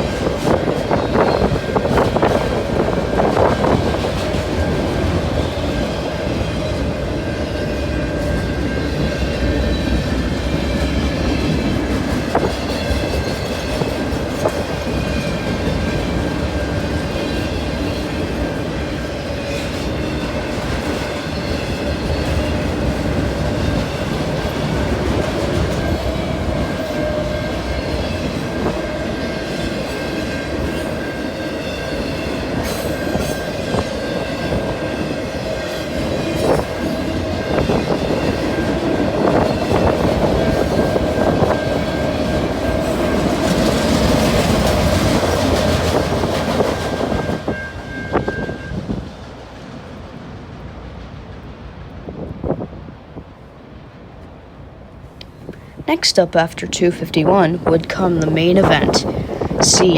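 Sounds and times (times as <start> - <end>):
train wheels clattering on rails: 0.0 - 50.1.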